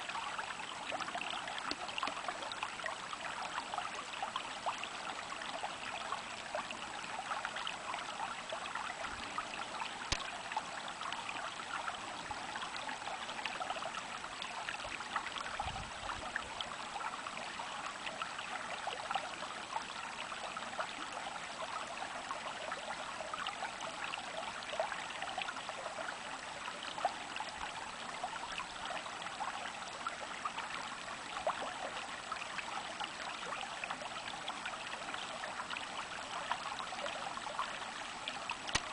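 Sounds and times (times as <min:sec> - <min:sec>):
stream trickling and babbling: 0:00.0 - 0:38.9.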